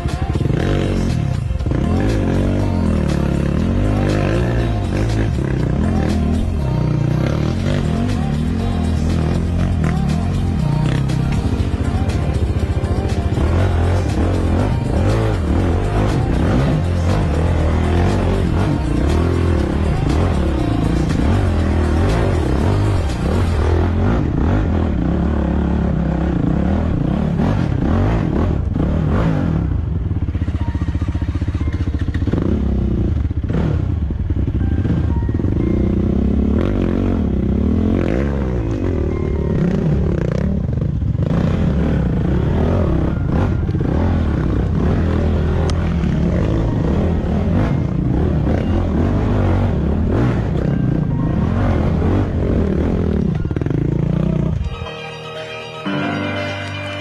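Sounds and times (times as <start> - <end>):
motorcycle engine revving: 0.0 - 54.7.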